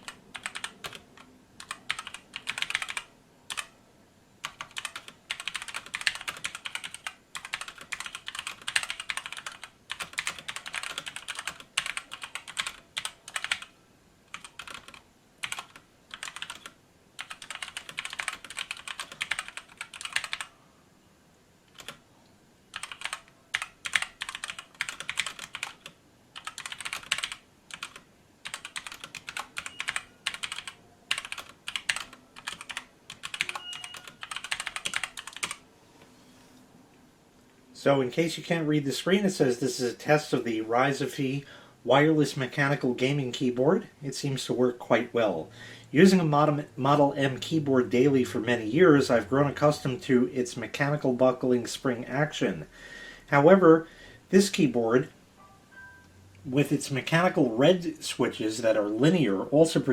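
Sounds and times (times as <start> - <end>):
mechanical keyboard keystrokes clacking: 0.0 - 3.7, 4.4 - 13.7, 14.3 - 20.5, 22.8 - 35.6.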